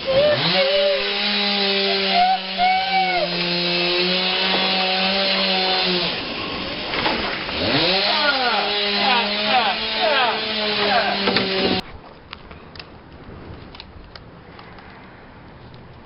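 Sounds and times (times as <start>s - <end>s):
chainsaw cutting wood: 0.0s - 11.8s.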